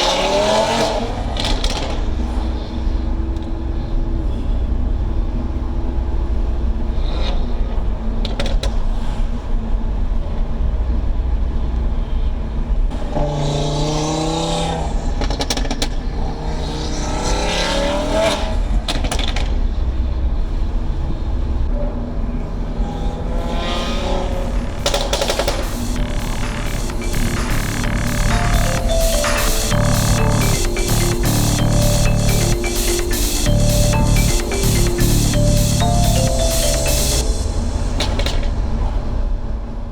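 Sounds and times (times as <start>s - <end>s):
car engine rumbling and revving: 20.5s - 28.7s.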